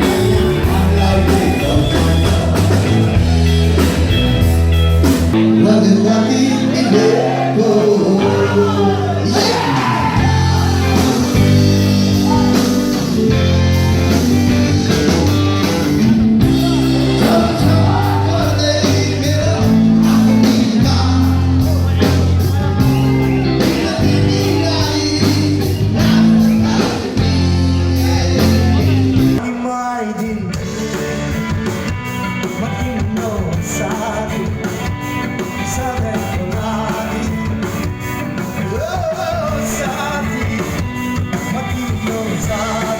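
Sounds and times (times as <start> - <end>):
live rock band with singer: 0.0 - 42.9.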